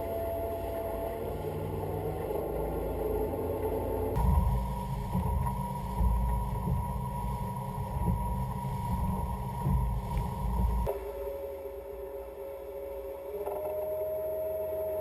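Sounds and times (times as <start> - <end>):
steady high tone: 0.0 - 4.3.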